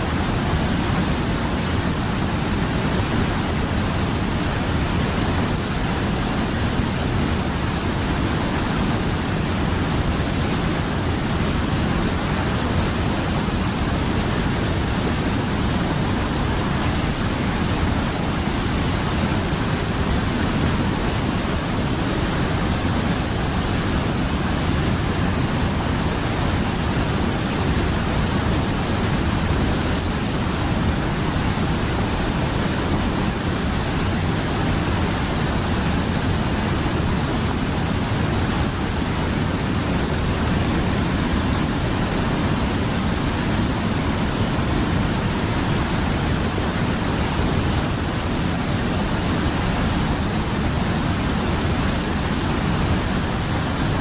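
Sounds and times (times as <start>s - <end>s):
mountain river flowing: 0.0s - 54.0s.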